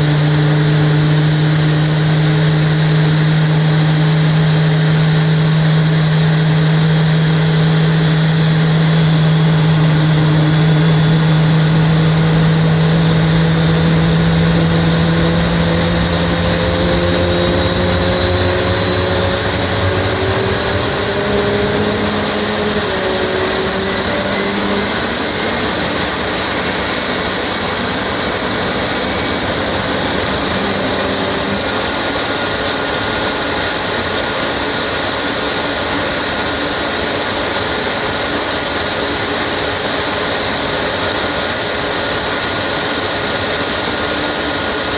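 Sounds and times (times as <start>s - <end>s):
low hum: 0.0s - 34.5s
jet engine roar: 0.0s - 44.9s.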